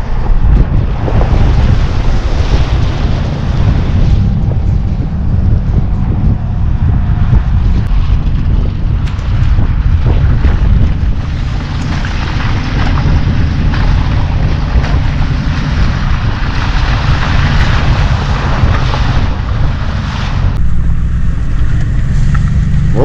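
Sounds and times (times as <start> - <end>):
truck engine and tyre rumble: 0.0 - 23.0
wind buffeting microphone: 0.0 - 23.0.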